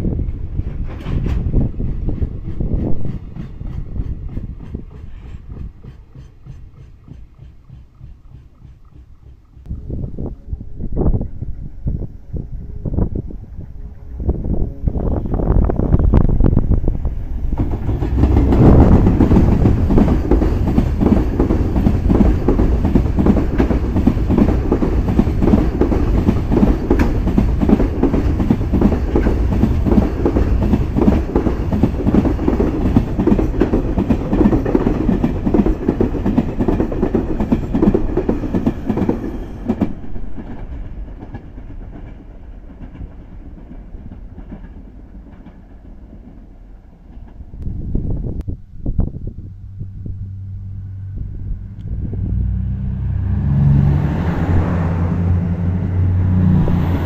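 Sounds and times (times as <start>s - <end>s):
faint train rumble: 0.0s - 57.0s
train wheels clattering: 0.6s - 9.7s, 17.5s - 46.4s.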